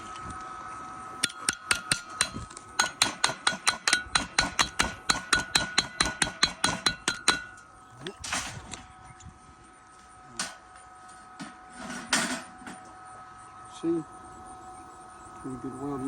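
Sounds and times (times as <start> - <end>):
chipping hammer on steel: 1.2 - 7.6.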